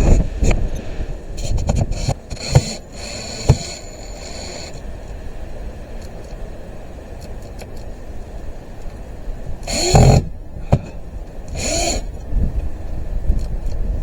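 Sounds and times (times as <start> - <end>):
steady low rumble: 0.0 - 7.2
cordless drill running: 1.4 - 4.9, 9.6 - 10.8, 11.4 - 12.2.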